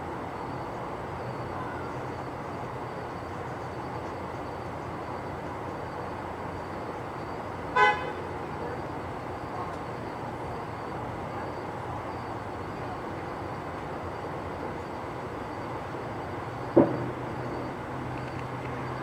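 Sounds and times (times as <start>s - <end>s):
outdoor rumble: 8.2s - 19.0s
firework bang: 16.8s - 17.4s.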